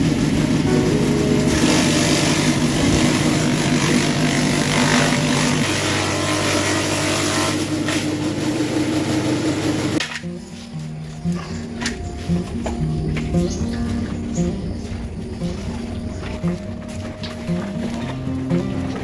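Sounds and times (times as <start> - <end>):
engine running: 0.0 - 19.0.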